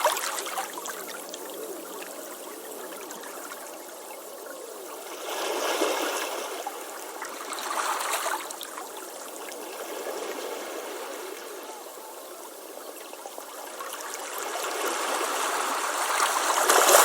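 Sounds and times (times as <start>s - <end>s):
ocean waves washing onto beach: 5.1s - 17.0s.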